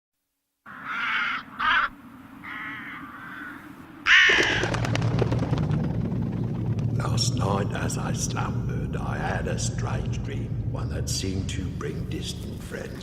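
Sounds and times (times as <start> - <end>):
harsh bird calls: 0.7 - 4.9
low rumble with faint crackling: 4.7 - 13.0.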